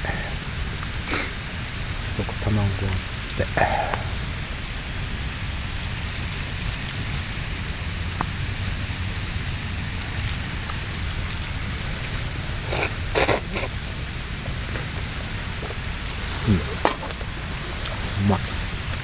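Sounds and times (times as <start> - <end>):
steady rushing hiss: 0.0 - 19.0
eating utensils clattering: 11.2 - 19.0.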